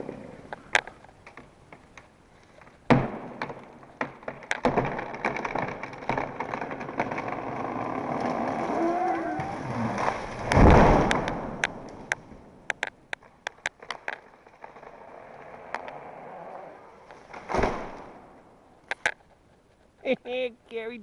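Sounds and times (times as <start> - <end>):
rushing of falling tree: 0.0 - 19.2
wood cracking and snapping: 0.0 - 19.5
branches snapping: 0.5 - 16.3, 16.9 - 19.4
heavy crash of tree: 2.9 - 12.7, 13.8 - 18.4.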